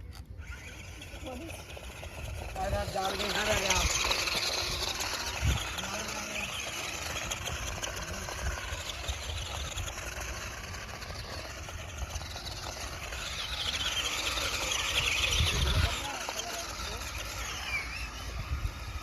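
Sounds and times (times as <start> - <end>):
toy car motor whining: 0.0 - 19.0.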